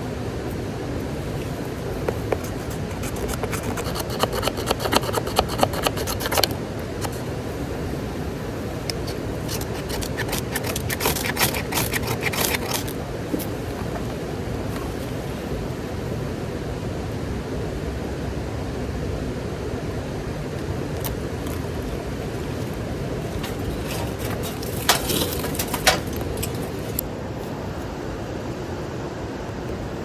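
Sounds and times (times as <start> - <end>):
hands scraping and clicking: 1.3 - 7.2, 8.8 - 15.0, 22.6 - 27.0.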